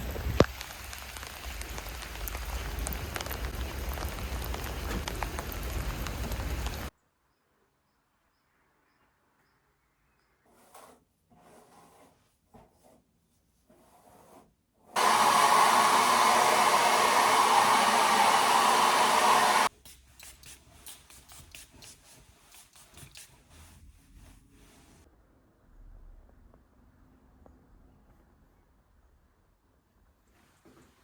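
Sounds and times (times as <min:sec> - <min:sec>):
electric appliance rushing noise: 0:15.0 - 0:19.7.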